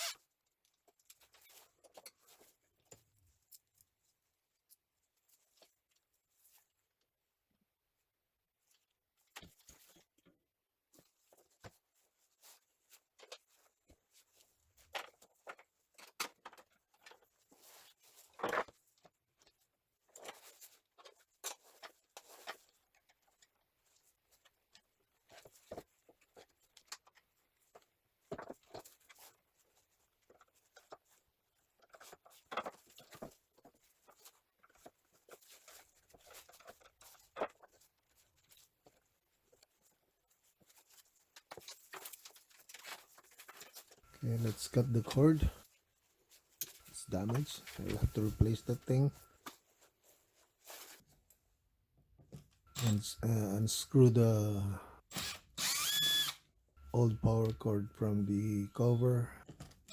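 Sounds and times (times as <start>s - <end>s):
screwdriver on screws: 55.1s - 56.4s.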